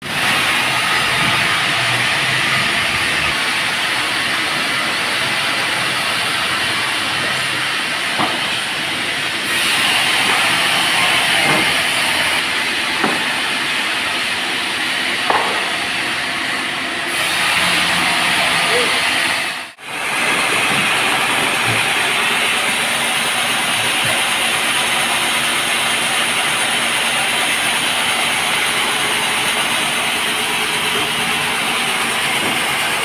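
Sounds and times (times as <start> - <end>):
saw blade cutting wood: 0.0 - 33.0.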